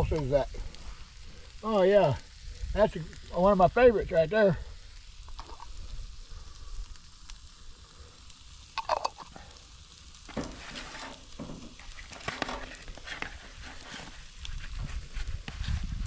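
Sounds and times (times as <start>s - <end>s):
food sizzling on griddle: 0.0s - 16.0s
utensils scraping cooktop: 10.3s - 13.8s.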